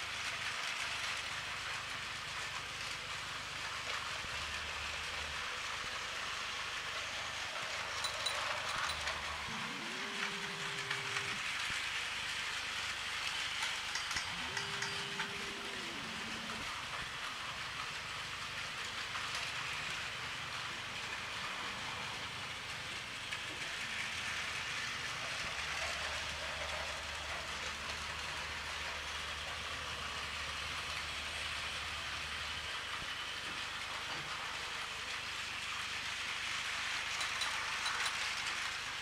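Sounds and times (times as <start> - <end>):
toy train motor whirring: 0.0 - 39.0.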